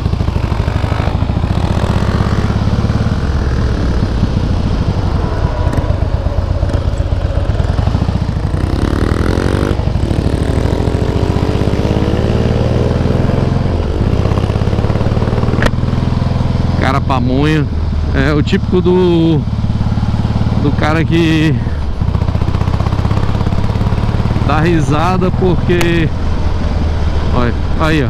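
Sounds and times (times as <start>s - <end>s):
motorcycle engine running: 0.0s - 28.0s.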